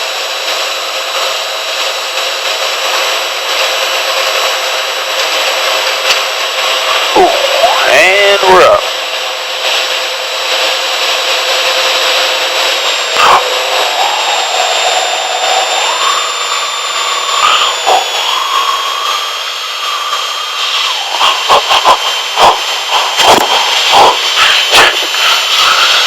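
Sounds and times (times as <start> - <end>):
aircraft engine and propeller drone: 0.0 - 26.0
wavering mid-pitched tone: 7.1 - 8.8.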